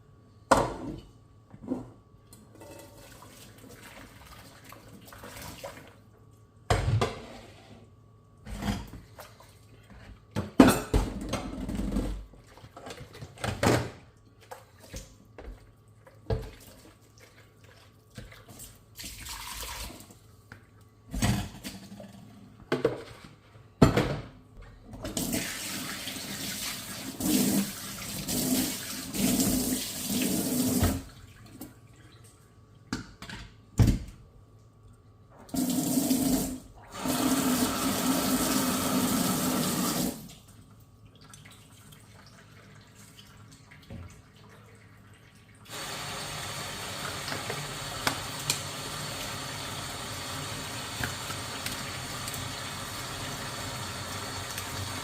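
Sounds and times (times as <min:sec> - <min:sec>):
dishes clinking and knocking: 0:23.8 - 0:24.3
tap running: 0:46.8 - 0:48.7.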